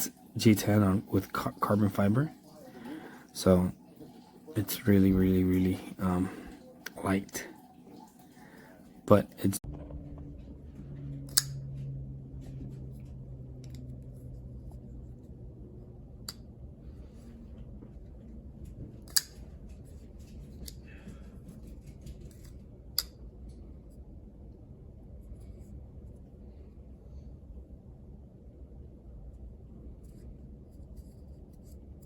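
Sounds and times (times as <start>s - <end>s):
low steady hum: 0.0s - 32.0s
folding knife blade clicking: 11.3s - 11.6s.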